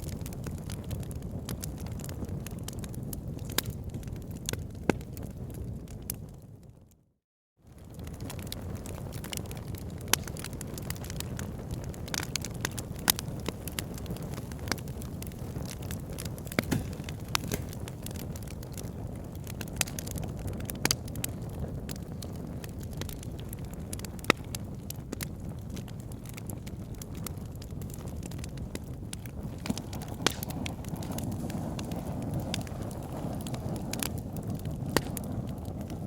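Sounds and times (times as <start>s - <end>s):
fire popping and snapping: 0.0s - 7.0s, 7.6s - 36.0s
low rumble of burning fire: 0.0s - 36.0s.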